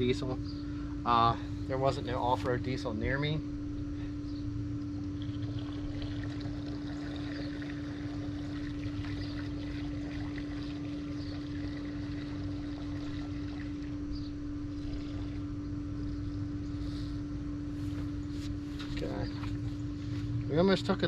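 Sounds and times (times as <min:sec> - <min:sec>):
low steady hum: 0:00.0 - 0:21.0
fuel pouring through funnel: 0:04.8 - 0:16.1.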